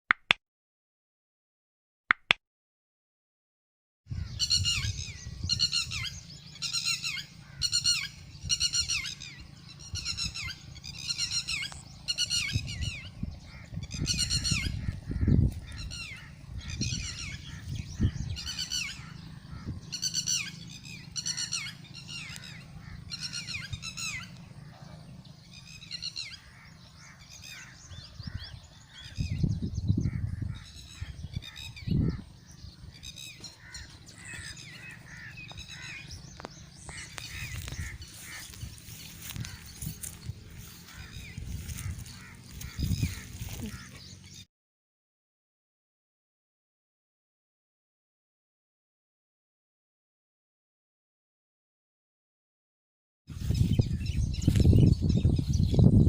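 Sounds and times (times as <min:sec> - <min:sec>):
birds calling: 0:04.1 - 0:44.5, 0:53.3 - 0:56.0.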